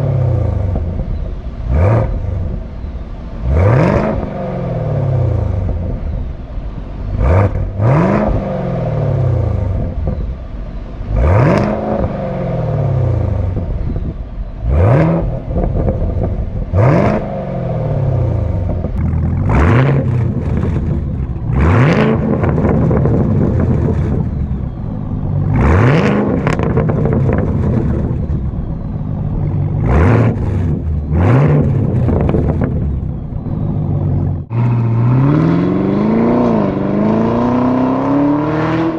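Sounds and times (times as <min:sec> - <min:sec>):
rumbling engine idle: 0:00.0 - 0:03.8, 0:08.8 - 0:34.5
car engine revving: 0:00.0 - 0:38.9.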